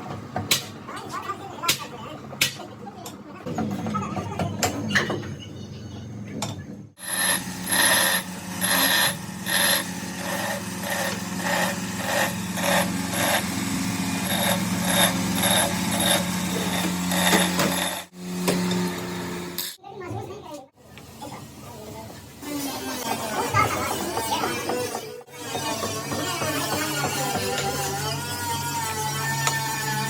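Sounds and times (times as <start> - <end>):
power tool pulsing hum: 7.0 - 19.8.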